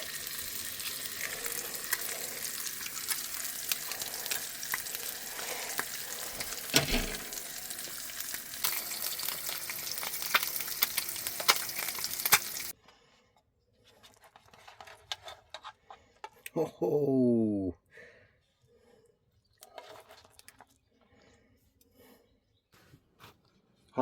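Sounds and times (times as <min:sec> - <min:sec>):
bacon sizzling in a pan: 0:00.0 - 0:12.7.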